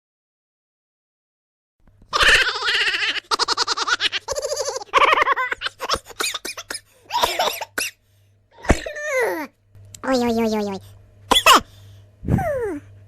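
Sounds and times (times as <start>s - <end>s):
bursts of laughter: 2.1s - 6.5s
voice snippets: 8.6s - 12.9s.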